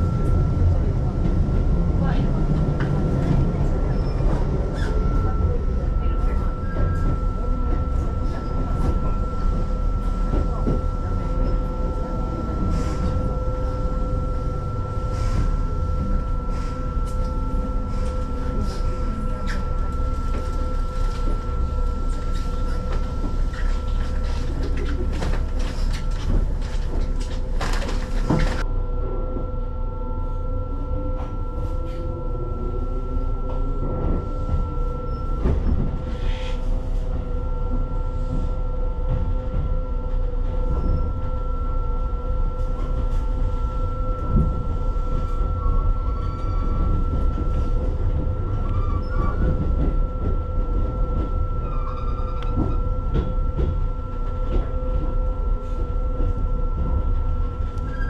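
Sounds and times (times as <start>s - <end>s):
train equipment hum: 0.0s - 58.0s.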